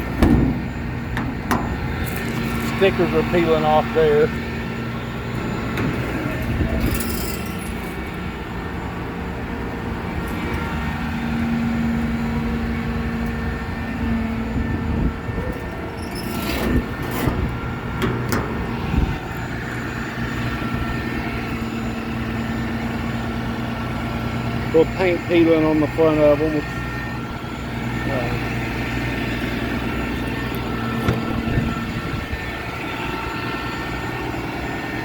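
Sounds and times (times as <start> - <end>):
truck engine idling: 0.0 - 35.0
sharp knocks and clicks: 0.2 - 2.0.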